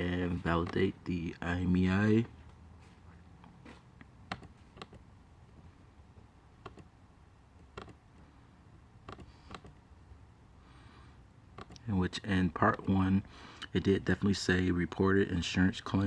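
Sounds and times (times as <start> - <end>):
computer keys clicking: 4.3 - 5.0, 7.6 - 8.0.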